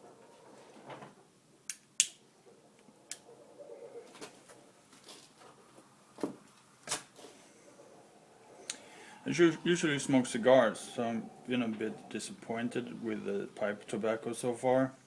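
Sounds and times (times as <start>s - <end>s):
sharp clicks: 1.7s - 2.2s
chickens clucking: 2.4s - 14.3s.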